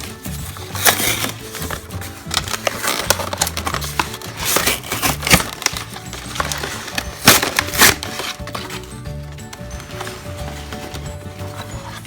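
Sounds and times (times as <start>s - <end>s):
packaging tearing and crinkling: 0.0s - 8.9s
background music: 0.0s - 12.0s.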